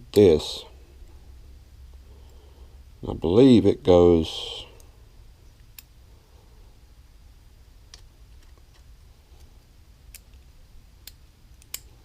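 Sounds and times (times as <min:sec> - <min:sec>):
low steady hum: 0:00.0 - 0:12.0
metal parts clicking: 0:11.0 - 0:11.9.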